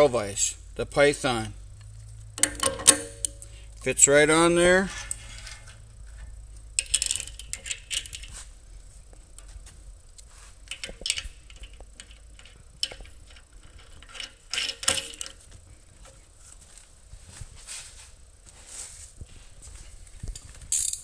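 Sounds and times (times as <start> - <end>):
small metal parts clinking: 2.4 - 9.6, 10.2 - 15.6, 20.4 - 21.0.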